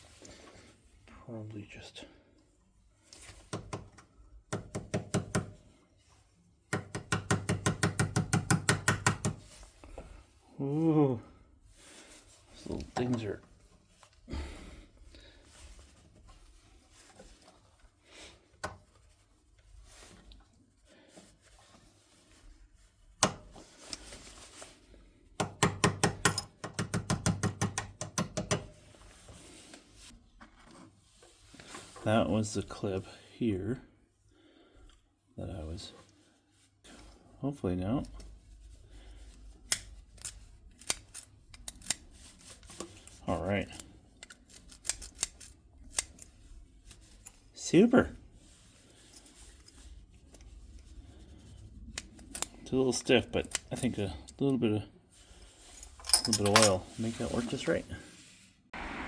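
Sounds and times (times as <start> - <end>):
rapid tapping on lock parts: 6.7 - 9.5, 25.4 - 28.8.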